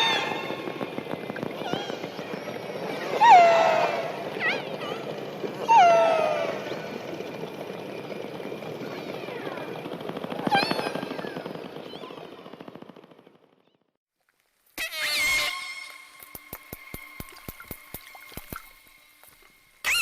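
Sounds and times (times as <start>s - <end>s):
killer whale calls: 2.9s - 4.7s.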